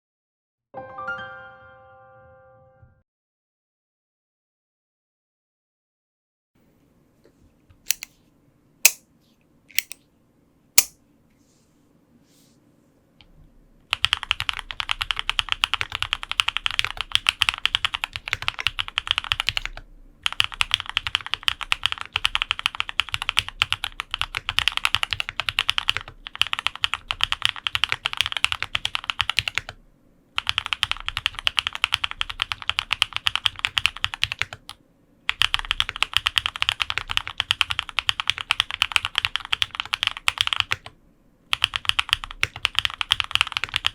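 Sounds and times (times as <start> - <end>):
mechanical keyboard typing: 9.7 - 10.0, 13.9 - 29.8, 30.4 - 43.9.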